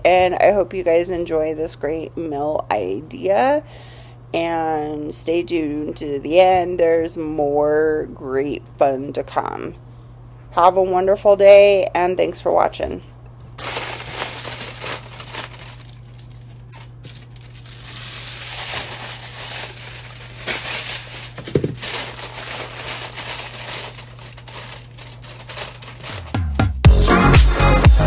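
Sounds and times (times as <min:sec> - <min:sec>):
low electrical hum: 0:00.0 - 0:26.3
crinkling and rustling: 0:13.6 - 0:26.4.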